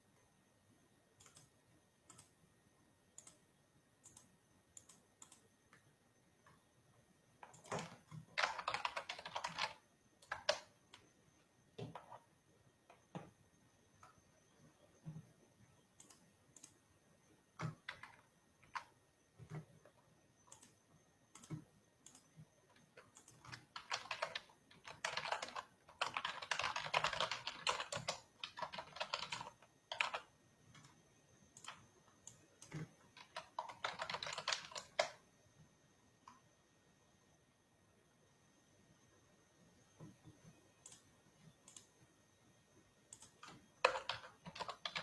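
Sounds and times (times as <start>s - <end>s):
typing on a keyboard: 1.2s - 2.4s, 3.1s - 3.4s, 4.0s - 5.8s, 7.4s - 11.1s, 11.8s - 12.3s, 17.6s - 35.2s, 43.1s - 45.0s.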